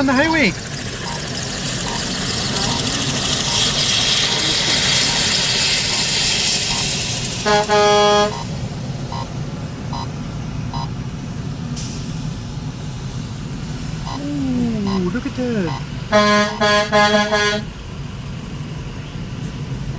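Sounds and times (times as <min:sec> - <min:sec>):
road traffic noise: 0:00.0 - 0:19.9
truck horn honk: 0:06.8 - 0:08.5, 0:15.7 - 0:17.8.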